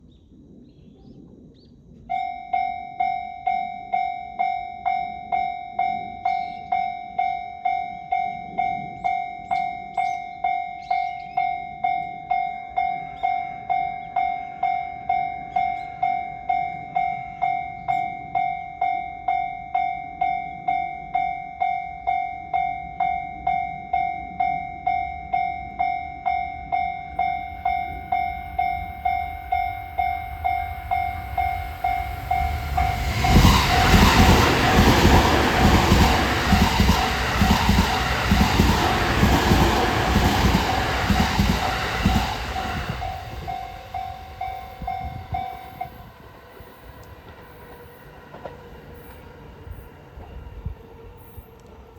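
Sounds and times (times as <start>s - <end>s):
level-crossing warning bell: 2.1s - 48.5s
low rumble: 27.5s - 46.1s.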